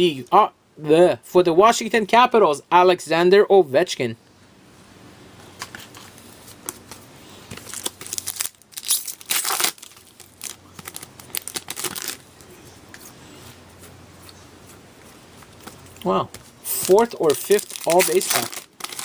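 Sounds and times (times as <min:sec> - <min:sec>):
card pack wrapper tearing: 0:07.6 - 0:12.2, 0:16.6 - 0:19.0.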